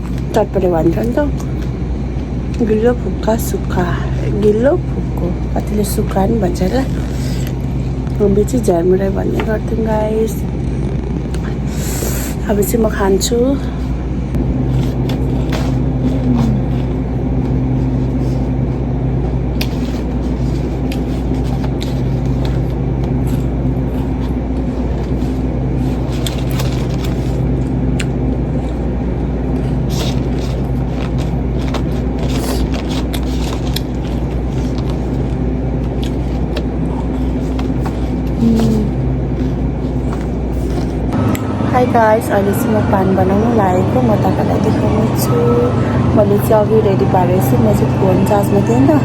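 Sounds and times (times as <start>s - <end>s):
steady low hum: 0.0s - 49.0s
crunching of snack being eaten: 29.6s - 38.2s.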